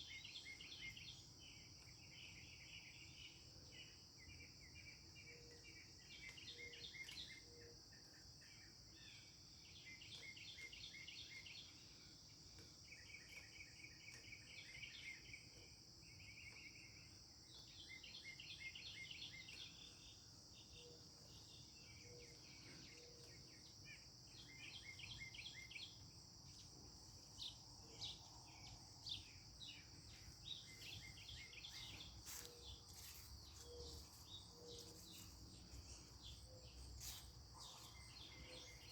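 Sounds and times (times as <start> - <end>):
high buzz of insects: 23.6 - 38.9
mockingbird singing: 27.4 - 38.9.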